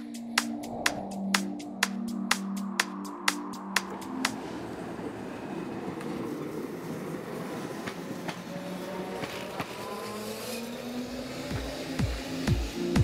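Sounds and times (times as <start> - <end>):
electronic kick drum beat: 0.0 - 3.9, 11.6 - 13.0.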